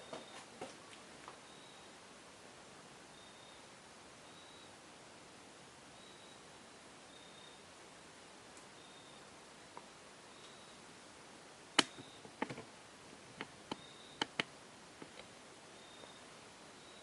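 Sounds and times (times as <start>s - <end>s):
sharp clicks and ticks: 13.4s - 15.3s.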